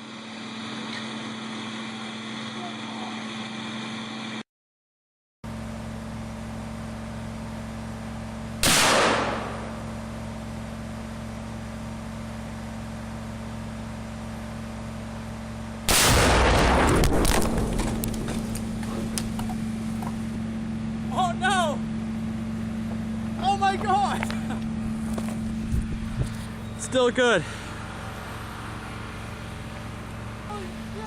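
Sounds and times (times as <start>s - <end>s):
explosion blast with crackle: 8.6s - 9.8s, 15.9s - 19.0s
rifle shot: 8.6s - 9.8s, 15.9s - 18.2s.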